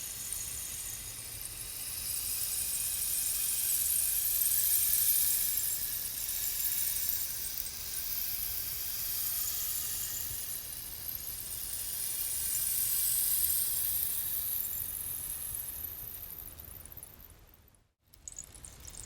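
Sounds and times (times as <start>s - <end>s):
rainstick trickling hiss: 0.0s - 19.0s.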